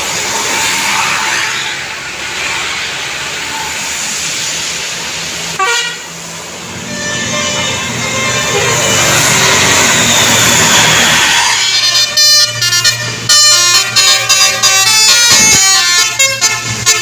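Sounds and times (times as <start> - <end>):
rushing traffic: 0.0 - 17.0
bus horn blast: 5.6 - 6.1, 6.8 - 17.0.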